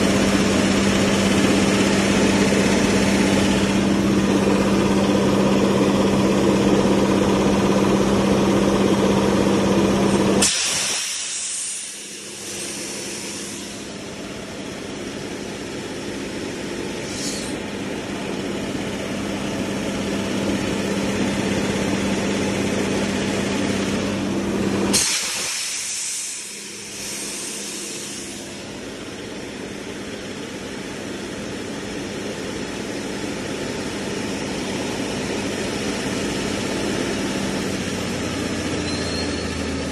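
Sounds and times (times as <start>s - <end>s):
air compressor humming: 0.0s - 39.9s
hissing air rush: 10.4s - 14.0s, 24.9s - 28.7s.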